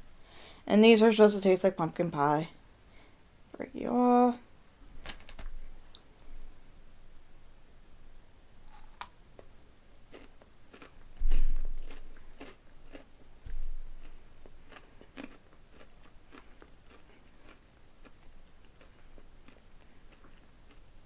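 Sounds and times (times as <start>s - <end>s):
chewing crisp wafer: 8.7s - 21.0s.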